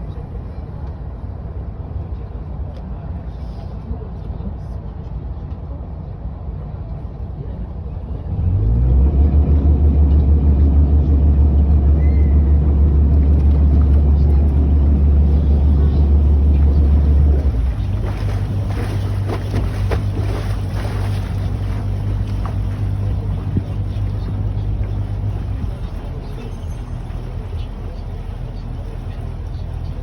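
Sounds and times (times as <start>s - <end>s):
boat engine rumbling: 7.3s - 30.0s.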